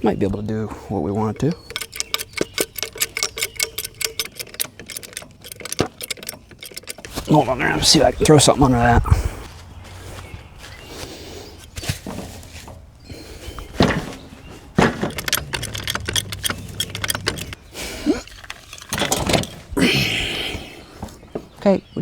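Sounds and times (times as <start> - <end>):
metal tools clanking and rattling: 1.2 - 8.6, 14.8 - 19.9.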